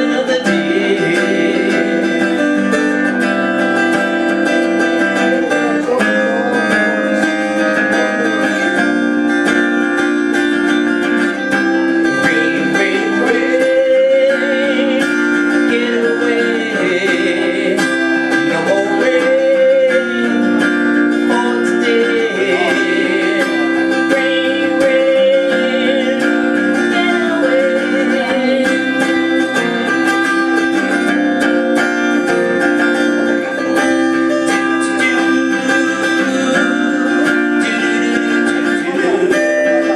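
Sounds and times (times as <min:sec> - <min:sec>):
acoustic guitar strumming: 0:00.0 - 0:39.9.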